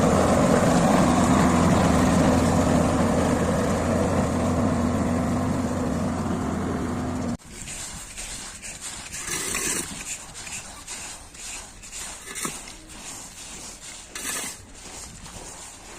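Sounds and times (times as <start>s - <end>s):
heavy machine engine running: 0.0s - 7.4s
uneven scraping and clicking: 7.5s - 15.9s.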